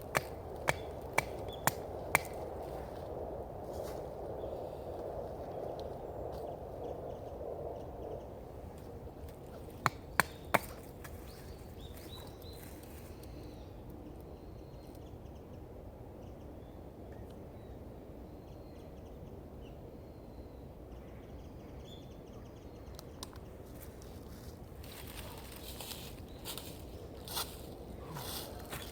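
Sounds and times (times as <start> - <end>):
low outdoor background: 0.0 - 28.9
sharp knocks: 9.8 - 10.8.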